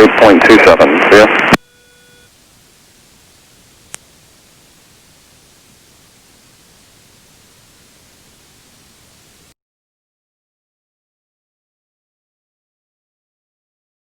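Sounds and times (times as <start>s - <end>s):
radio static hiss: 0.0s - 9.6s.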